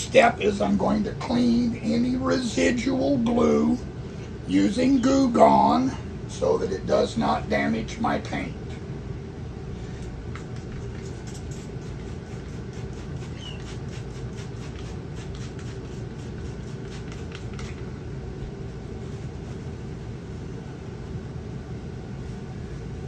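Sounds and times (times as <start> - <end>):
steady low rumble: 0.0 - 13.2
rag scratchy wiping strokes: 10.5 - 17.9.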